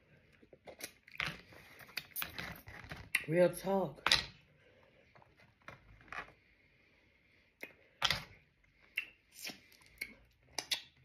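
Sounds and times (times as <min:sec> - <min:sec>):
mouth smacks and clicks: 0:00.6 - 0:02.3, 0:08.8 - 0:11.0.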